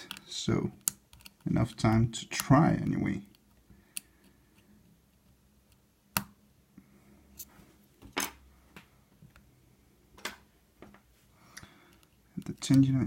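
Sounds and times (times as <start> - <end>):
lock-picking tools clicking: 0.0 - 2.6.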